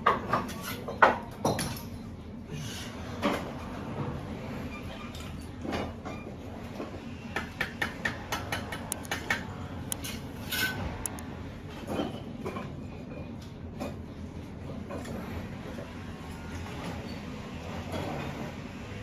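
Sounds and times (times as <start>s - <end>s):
scattered knocks: 7.4s - 9.5s.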